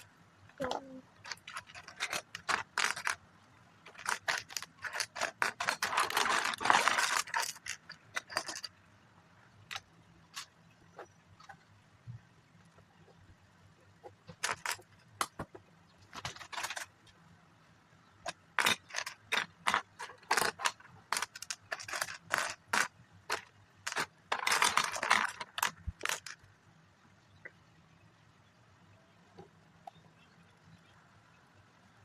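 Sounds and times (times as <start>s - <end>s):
plastic toy bricks clicking: 0.6s - 3.2s, 3.8s - 8.8s, 14.3s - 15.5s, 16.1s - 17.0s, 18.2s - 26.5s.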